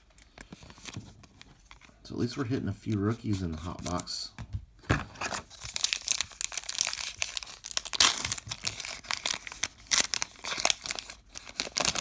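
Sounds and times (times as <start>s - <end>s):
wrapper tearing and crinkling: 5.2s - 12.0s.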